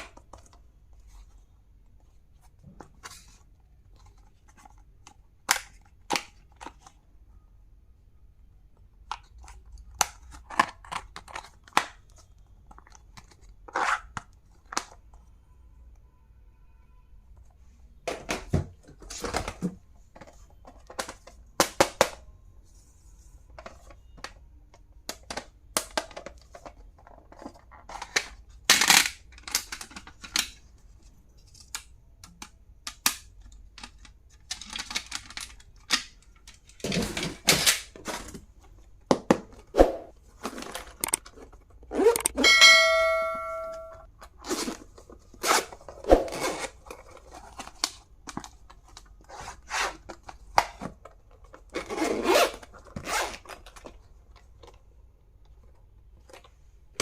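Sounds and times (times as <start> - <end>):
metallic ring: 42.4 - 44.1.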